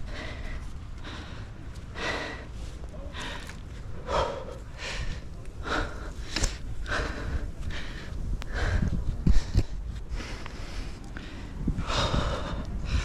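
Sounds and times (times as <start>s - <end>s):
person breathing hard: 0.0s - 13.0s.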